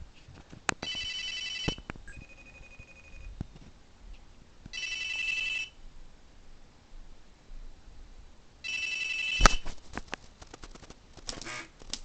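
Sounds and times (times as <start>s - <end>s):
phone ringing: 0.8s - 3.3s, 4.7s - 5.8s, 8.6s - 9.6s
faint tone: 2.1s - 3.3s.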